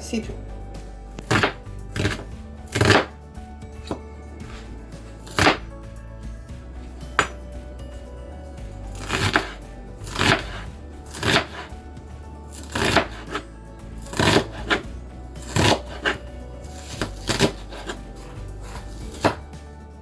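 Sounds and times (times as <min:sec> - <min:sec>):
background music: 0:00.0 - 0:20.0
knife chopping on cutting board: 0:01.2 - 0:03.2, 0:03.8 - 0:05.7, 0:06.9 - 0:08.1, 0:08.9 - 0:19.5.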